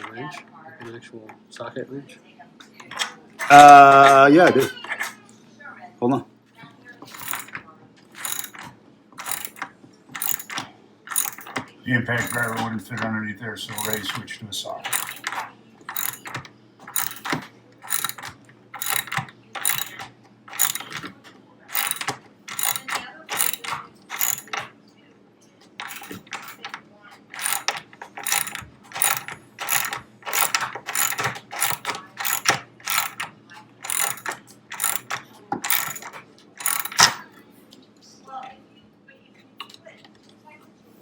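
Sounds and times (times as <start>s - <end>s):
ratcheting socket wrench clicking: 7.2s - 7.5s, 8.2s - 8.6s, 9.2s - 11.6s, 13.8s - 14.2s, 14.9s - 15.3s, 15.9s - 21.0s, 21.7s - 24.6s, 25.8s - 26.6s, 27.4s - 37.2s.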